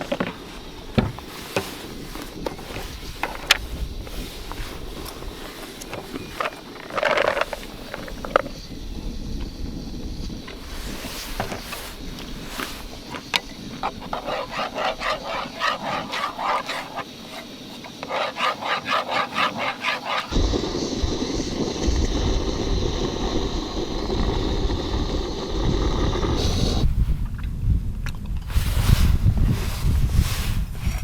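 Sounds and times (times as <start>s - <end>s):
rhythmic scraping strokes: 13.8s - 24.3s
wind rushing: 20.3s - 31.0s.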